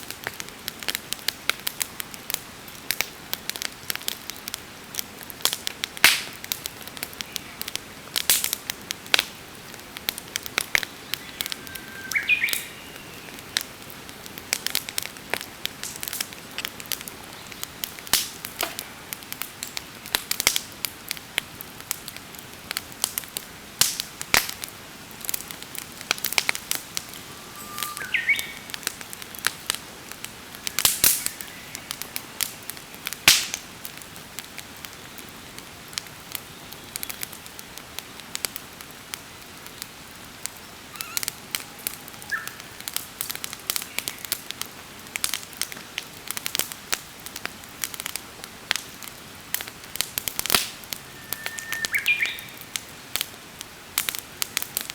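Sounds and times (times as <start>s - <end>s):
campfire crackling and popping: 0.0s - 54.9s
short rising bird call: 40.9s - 41.4s, 51.0s - 52.6s.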